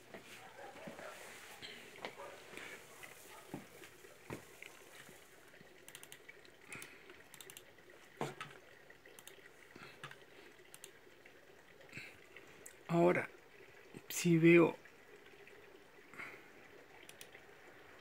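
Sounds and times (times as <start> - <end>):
small clicks and taps: 5.8 - 11.0, 17.0 - 17.4.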